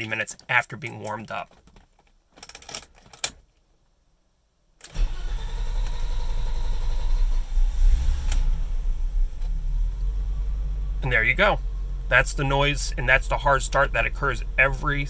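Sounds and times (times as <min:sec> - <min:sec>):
car engine starting and running: 0:04.9 - 0:15.0.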